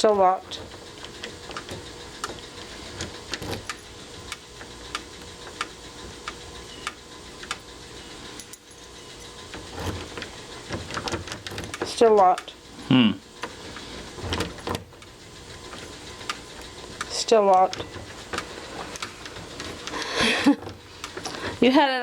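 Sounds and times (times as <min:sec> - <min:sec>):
lock clicking: 0:01.0 - 0:06.4
keys jangling: 0:08.4 - 0:10.0.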